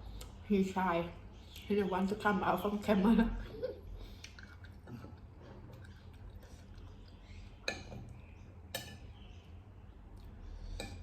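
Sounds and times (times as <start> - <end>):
faint chewing: 4.0 - 8.2, 10.1 - 11.0.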